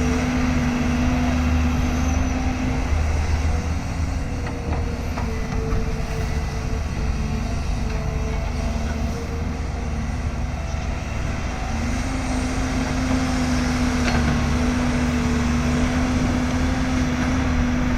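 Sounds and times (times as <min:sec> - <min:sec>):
excavator diesel engine running: 0:00.0 - 0:17.9.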